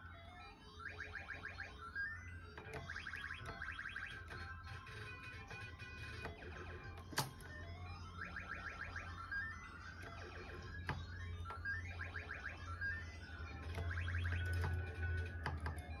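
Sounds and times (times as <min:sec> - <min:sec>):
click: 0:02.5 - 0:04.5
rising electronic beeps: 0:05.4 - 0:16.0.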